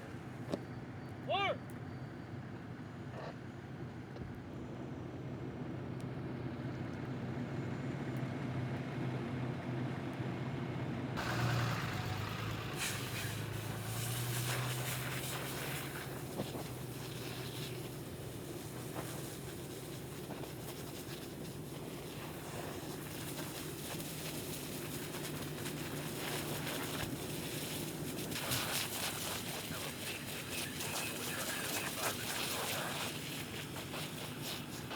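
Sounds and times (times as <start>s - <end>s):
truck engine idling: 10.5s - 34.9s
broad hiss: 11.2s - 34.9s.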